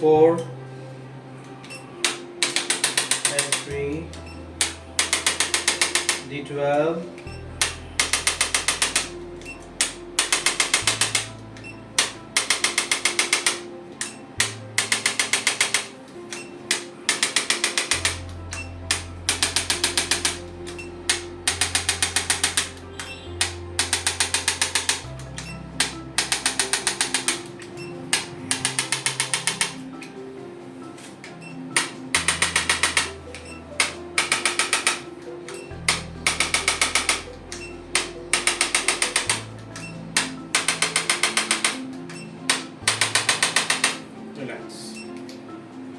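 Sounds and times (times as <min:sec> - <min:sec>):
background music with bass: 0:03.2 - 0:15.0, 0:16.2 - 0:45.2
adjusting gun rapid clicks: 0:04.6 - 0:06.2, 0:07.6 - 0:09.1, 0:09.8 - 0:11.4, 0:12.0 - 0:15.9, 0:16.7 - 0:22.8, 0:23.4 - 0:25.2, 0:25.8 - 0:27.5, 0:28.1 - 0:29.8, 0:31.8 - 0:35.0, 0:35.9 - 0:41.8, 0:42.5 - 0:44.0.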